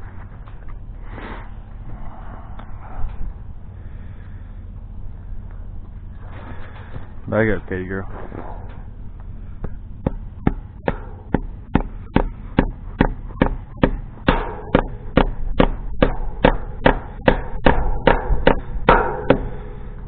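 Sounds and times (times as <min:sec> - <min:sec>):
hammer striking: 0:10.0 - 0:20.0.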